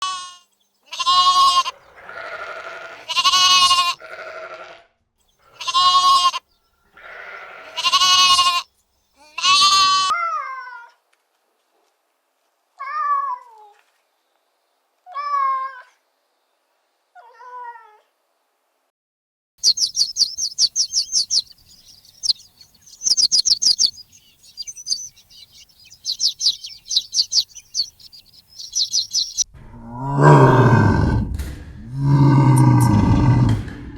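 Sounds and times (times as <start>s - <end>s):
sheep or goats bleating: 0.0s - 4.9s, 5.5s - 6.4s, 7.0s - 10.3s.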